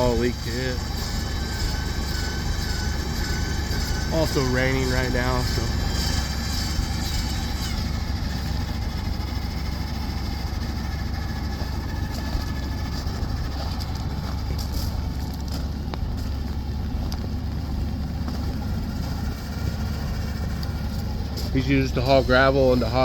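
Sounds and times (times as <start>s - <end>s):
truck engine idling: 0.0s - 23.0s.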